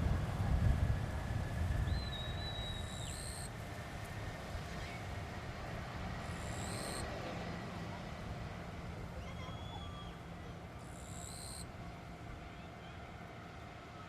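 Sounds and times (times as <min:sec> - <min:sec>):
jet engines rumbling: 0:00.0 - 0:10.8.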